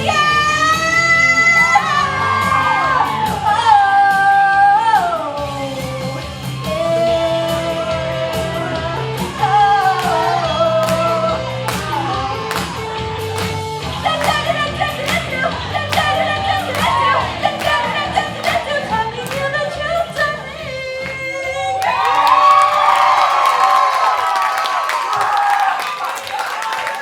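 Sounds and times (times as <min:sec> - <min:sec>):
pop backing track with beat: 0:05.6 - 0:22.0.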